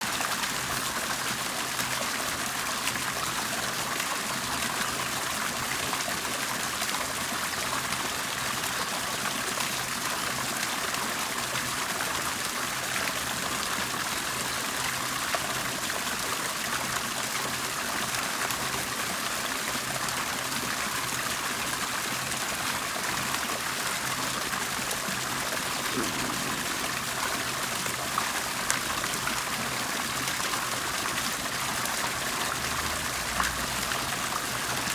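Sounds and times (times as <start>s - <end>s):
water bubbling and trickling: 20.8s - 34.9s.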